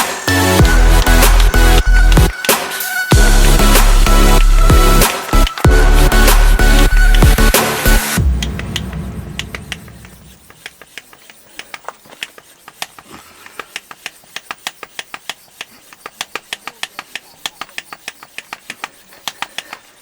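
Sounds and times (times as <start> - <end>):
sharp dry clicks: 0.0 - 20.0.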